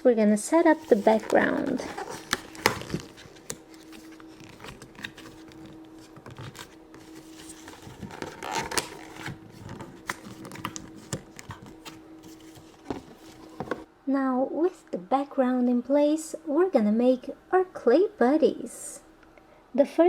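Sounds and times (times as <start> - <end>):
cardboard rustling and clicks: 0.7 - 13.9.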